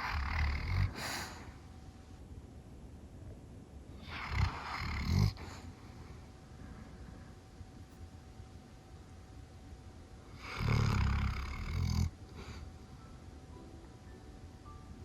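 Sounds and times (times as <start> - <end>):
dog snoring: 0.0 - 1.6, 4.0 - 5.8, 10.3 - 12.6.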